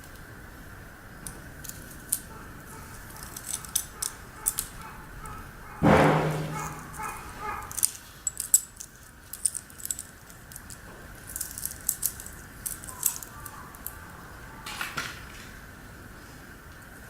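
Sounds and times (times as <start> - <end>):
saw chain clicking and rattling: 1.2 - 5.8, 6.5 - 14.0.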